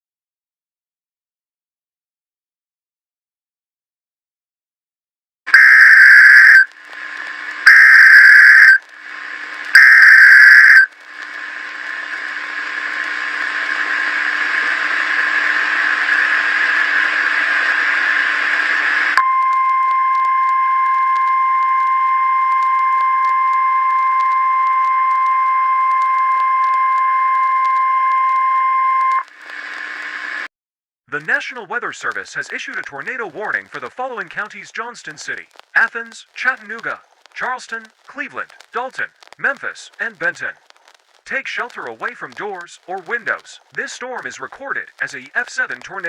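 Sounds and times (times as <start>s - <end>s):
screeching data bursts: 5.5s - 6.7s, 7.4s - 8.9s, 9.7s - 12.2s
hissing buzzing noise: 5.5s - 19.2s
piercing alert tone: 5.6s - 6.7s, 7.7s - 8.8s, 9.8s - 10.9s.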